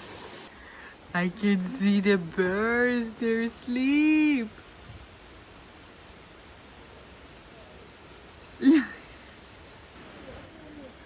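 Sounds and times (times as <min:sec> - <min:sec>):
insect chorus: 0:00.0 - 0:11.0.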